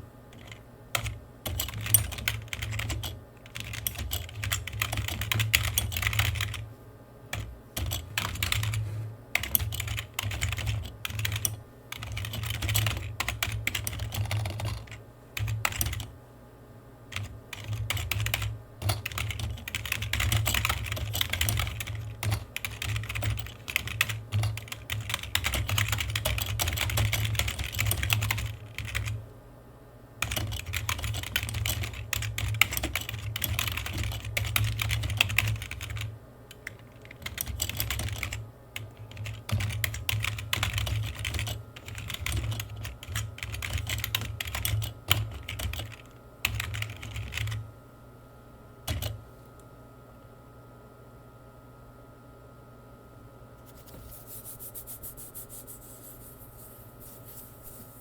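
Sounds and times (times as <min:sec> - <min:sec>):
typing on keyboard: 0:00.4 - 0:06.6, 0:07.4 - 0:08.8, 0:09.4 - 0:16.1, 0:17.1 - 0:29.2, 0:30.2 - 0:47.6, 0:48.9 - 0:49.2.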